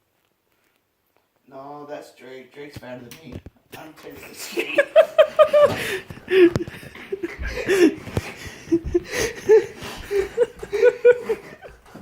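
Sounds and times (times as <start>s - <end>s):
chuckling laughter: 4.4s - 12.0s.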